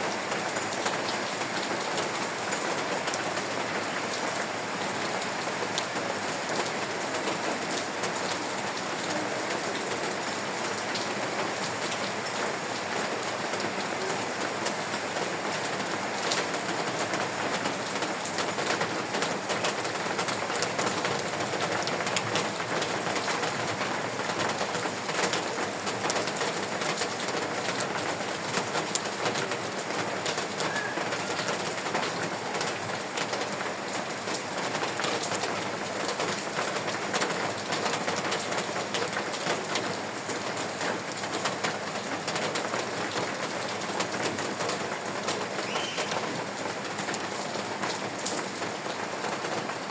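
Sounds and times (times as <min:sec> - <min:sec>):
raindrops ticking: 0:14.4 - 0:49.9.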